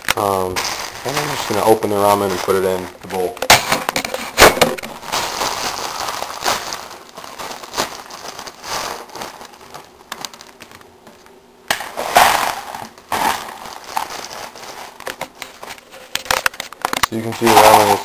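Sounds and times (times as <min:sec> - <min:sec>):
plastic wrapper crinkling: 0:00.0 - 0:18.0
dry noodles rattling into bowl: 0:11.9 - 0:16.5.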